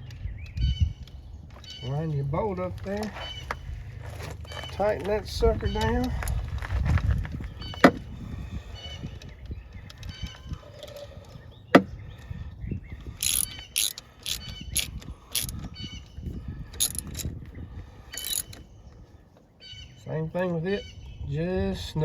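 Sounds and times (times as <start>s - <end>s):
hand ratchet clicking: 13.2s - 15.6s, 16.8s - 17.3s, 18.2s - 18.6s.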